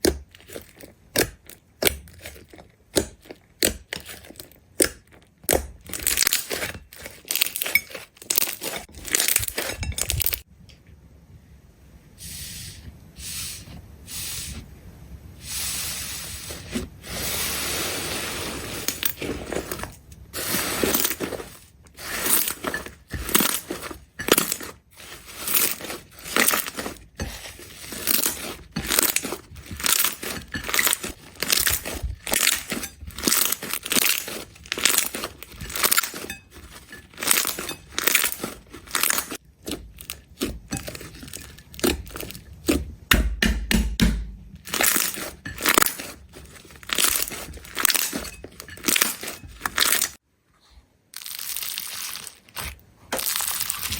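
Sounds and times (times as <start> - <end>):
slime squeezed crackling: 44.6 - 48.1, 51.2 - 53.9.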